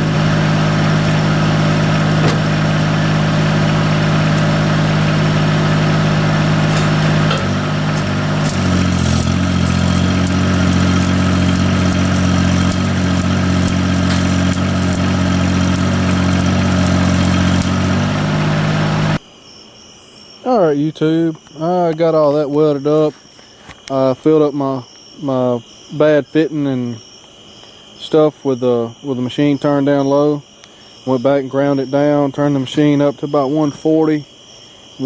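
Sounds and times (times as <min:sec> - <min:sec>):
welder engine running: 0:00.0 - 0:19.2
welding arc crackling: 0:00.0 - 0:19.2.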